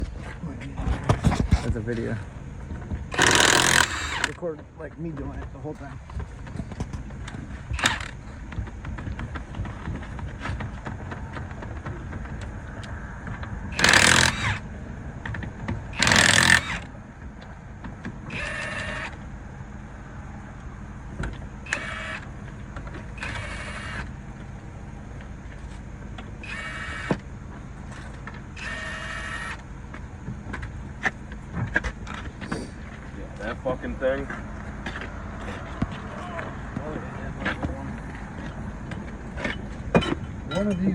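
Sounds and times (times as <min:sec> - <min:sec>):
steady low hum: 0:00.0 - 0:40.9
impact wrench whining: 0:03.1 - 0:04.5, 0:06.5 - 0:12.4, 0:13.7 - 0:14.7, 0:15.9 - 0:16.9, 0:18.3 - 0:19.2, 0:21.6 - 0:24.2, 0:26.4 - 0:27.3, 0:27.9 - 0:29.6.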